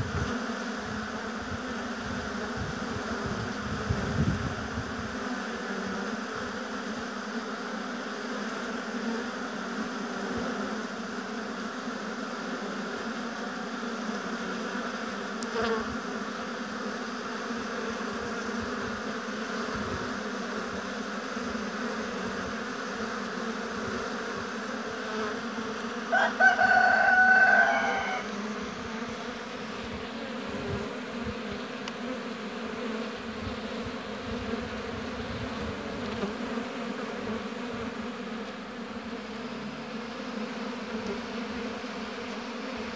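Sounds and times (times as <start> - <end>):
honeybees buzzing: 0.0 - 42.9
loud pitched call: 26.2 - 28.3.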